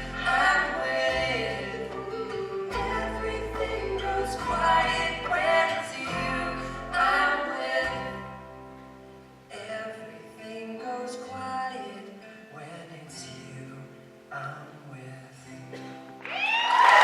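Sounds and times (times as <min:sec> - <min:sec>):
voices singing in harmony: 0:00.0 - 0:08.5.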